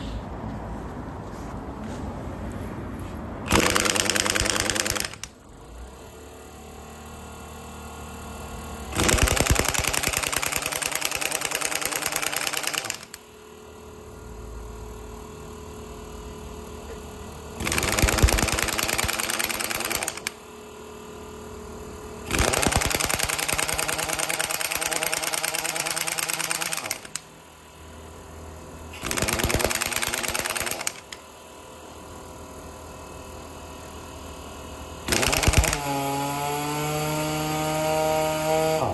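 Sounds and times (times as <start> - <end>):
impact wrench hammering: 3.4 - 5.4, 8.9 - 13.2, 17.6 - 20.4, 22.2 - 27.2, 29.0 - 31.2, 35.1 - 36.5.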